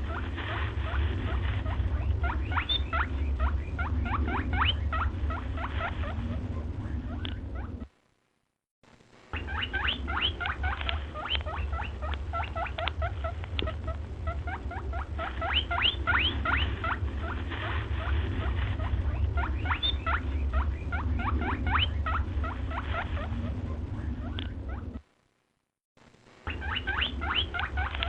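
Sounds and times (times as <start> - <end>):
small animals squeaking: 0.0 - 7.9, 9.4 - 25.0, 26.5 - 28.0
steady low hum: 0.0 - 28.0.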